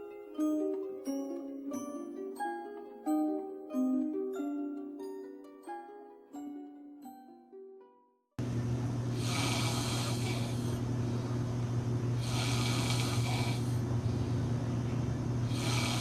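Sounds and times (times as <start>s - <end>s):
man snoring loudly: 9.1s - 11.4s, 12.1s - 14.3s, 15.4s - 16.0s.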